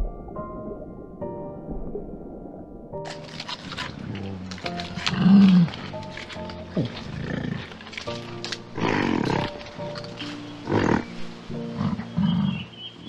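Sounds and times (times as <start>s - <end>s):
background music: 0.0s - 13.0s
animal calls: 3.1s - 13.0s.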